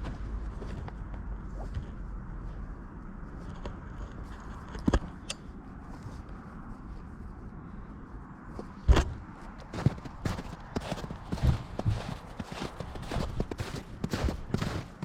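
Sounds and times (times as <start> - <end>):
footsteps walking: 9.4 - 15.0.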